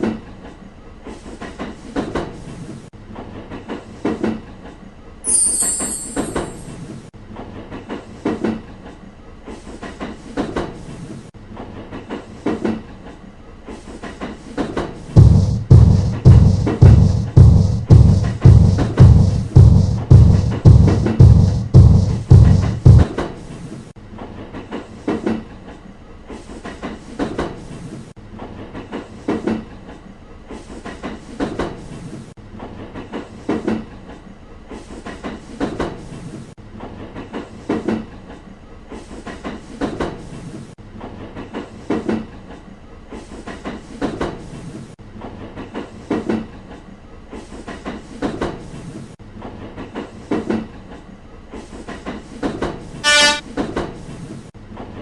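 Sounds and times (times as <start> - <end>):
train wheels clacking on rails: 0.0 - 23.6, 24.2 - 55.0
high pitched tone: 5.3 - 6.6.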